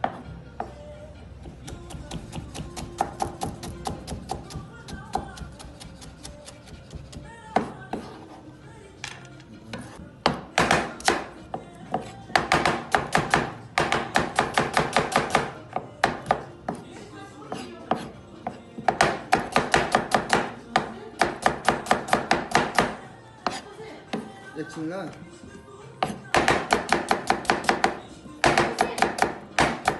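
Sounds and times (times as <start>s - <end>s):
knife chopping on cutting board: 1.6s - 8.0s, 17.5s - 24.3s.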